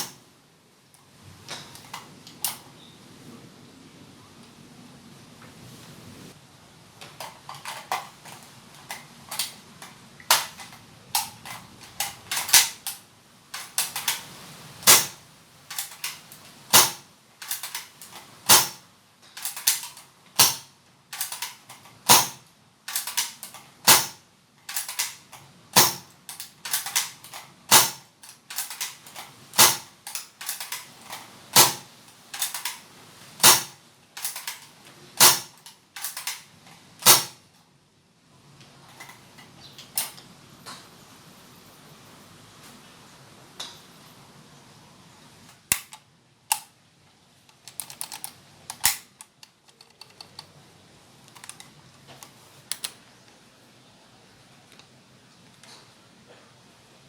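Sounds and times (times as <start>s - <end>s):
airsoft rifle shots snapping: 0.0s - 0.2s, 10.3s - 13.0s, 13.6s - 14.2s, 14.8s - 18.8s, 19.4s - 25.2s, 25.8s - 30.9s, 31.6s - 32.8s, 33.4s - 36.4s, 37.0s - 37.4s
cocking handle clicks: 15.7s - 18.8s, 19.4s - 24.1s, 52.7s - 53.0s.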